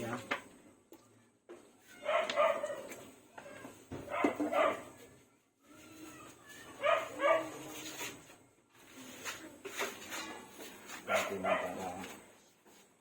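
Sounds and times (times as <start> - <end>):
dog barking: 2.0 - 2.9, 4.1 - 5.0, 6.8 - 7.6, 11.1 - 12.0.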